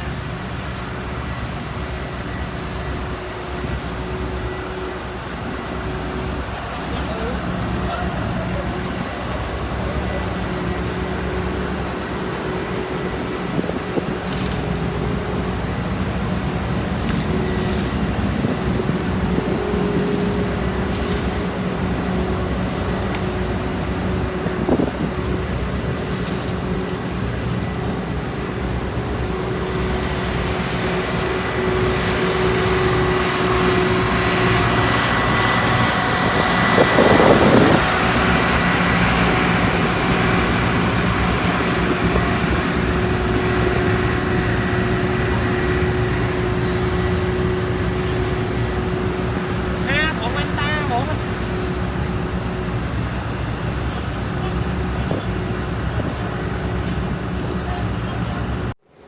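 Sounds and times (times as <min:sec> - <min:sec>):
paving machinery engine hum and whine: 0:00.0 - 0:59.0.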